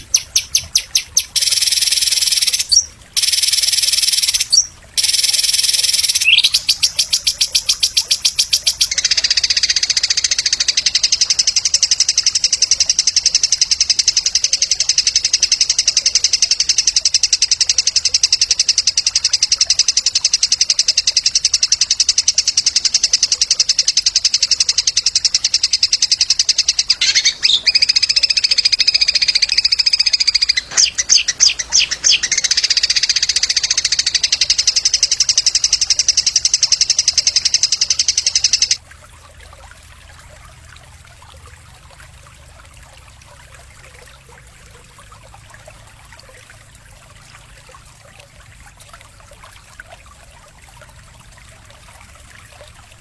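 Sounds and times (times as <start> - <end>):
songbird trilling: 0.0 - 18.4, 23.6 - 38.8.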